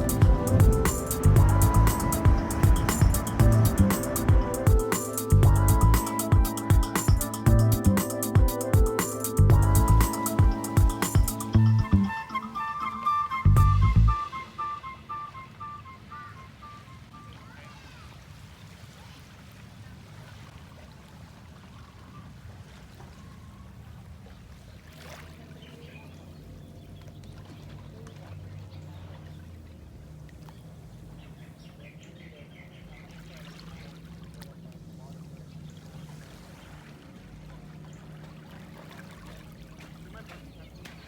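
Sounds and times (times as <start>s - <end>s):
low steady hum: 0.0s - 6.7s, 8.8s - 12.7s, 13.4s - 17.1s
water lapping at shoreline: 0.0s - 13.5s, 14.1s - 41.0s
faint distant voices: 14.2s - 20.3s, 21.9s - 41.0s.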